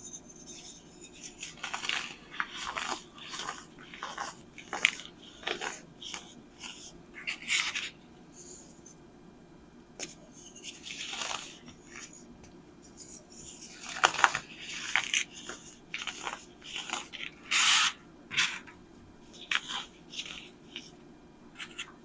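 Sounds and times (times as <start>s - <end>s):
baking soda crunching: 0.9s - 8.0s, 10.4s - 12.2s, 13.0s - 18.7s.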